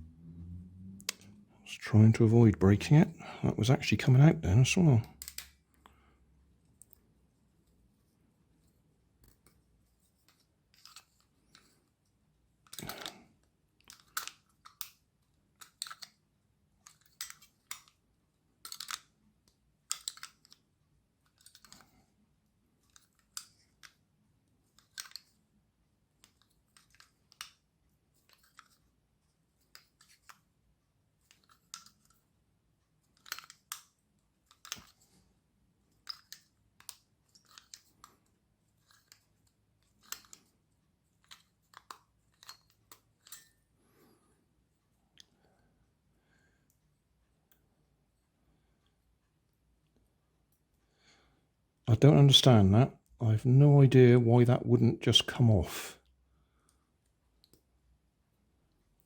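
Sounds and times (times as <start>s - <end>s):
plastic parts clicking and scraping: 5.0s - 5.6s, 8.6s - 12.0s, 12.6s - 16.2s, 16.8s - 18.0s, 18.6s - 22.0s, 22.8s - 25.4s, 26.2s - 29.0s, 29.6s - 30.5s, 31.2s - 32.3s, 33.0s - 35.3s, 35.9s - 44.2s.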